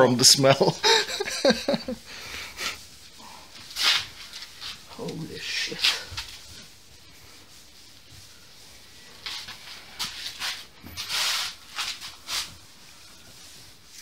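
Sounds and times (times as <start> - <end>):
masking tape rasping off roll: 3.6 - 6.5.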